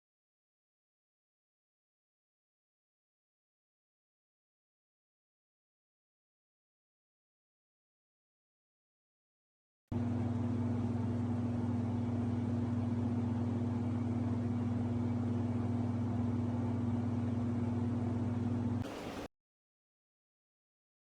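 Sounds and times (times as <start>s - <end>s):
steady low hum: 10.0s - 19.3s.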